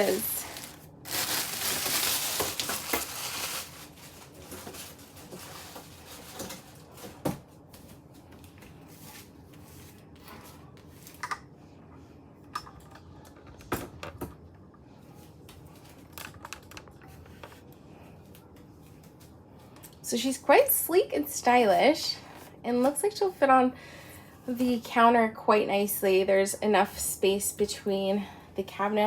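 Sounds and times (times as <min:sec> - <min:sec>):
plastic packaging rustling: 0:00.0 - 0:07.4.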